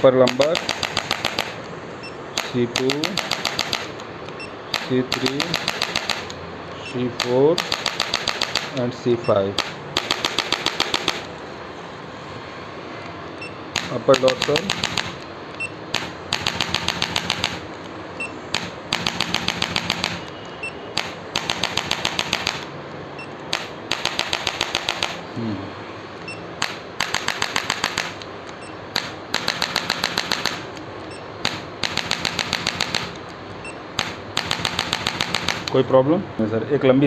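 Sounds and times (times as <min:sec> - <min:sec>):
rapid mechanical clicking: 0:00.0 - 0:11.5, 0:13.4 - 0:25.4, 0:26.2 - 0:35.9.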